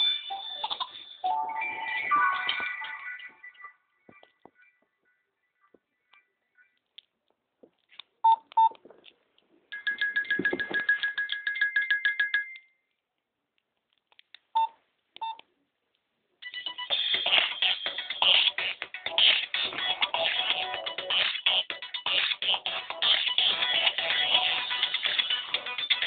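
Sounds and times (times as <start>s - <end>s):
electronic ringtone: 0.0s - 6.8s, 9.7s - 12.7s, 16.4s - 26.0s
phone beeps: 8.2s - 8.8s, 9.8s - 11.4s, 14.6s - 15.4s.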